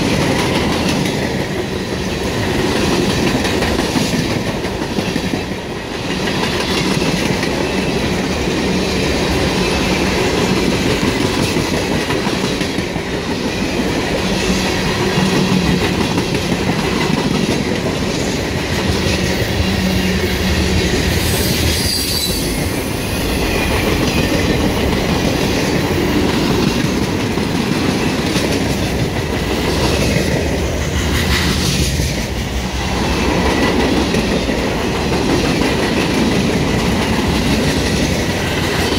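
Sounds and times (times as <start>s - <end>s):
train wheels clacking over rail joints: 0.0s - 22.3s, 23.7s - 38.9s
train wheel squeals: 19.2s - 24.7s.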